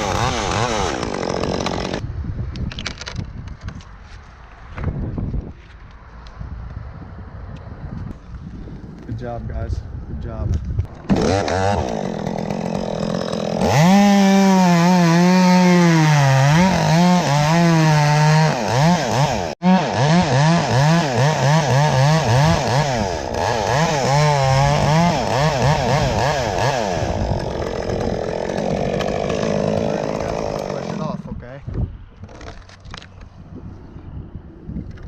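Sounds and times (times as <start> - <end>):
chainsaw cutting wood: 0.0 - 2.0, 10.9 - 31.3.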